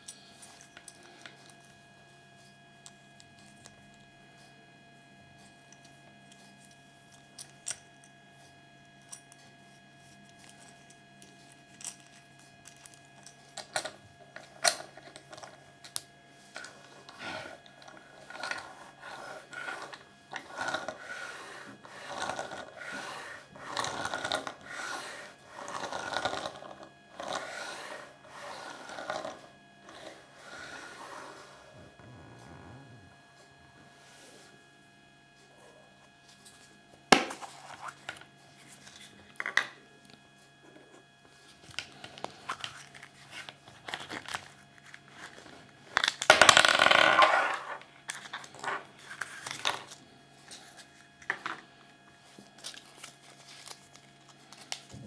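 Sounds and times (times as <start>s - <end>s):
rustling crinkling handling: 52.4s - 55.0s.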